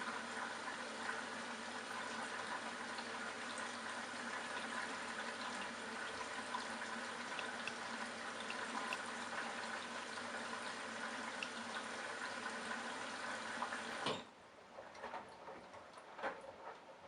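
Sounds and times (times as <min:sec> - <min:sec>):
water running into washing machine: 0:00.0 - 0:17.0
small splashing ticks: 0:07.2 - 0:09.1.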